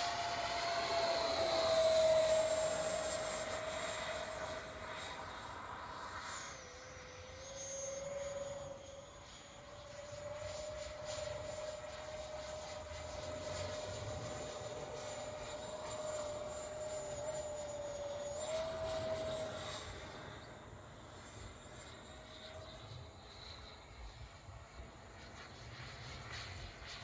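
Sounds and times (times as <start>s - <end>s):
electric ducted fans whining: 0.0s - 27.0s.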